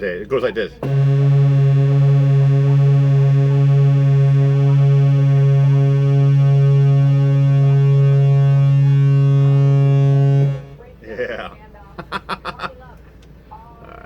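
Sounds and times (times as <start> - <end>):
low synthesizer horn tone: 0.8 - 11.0.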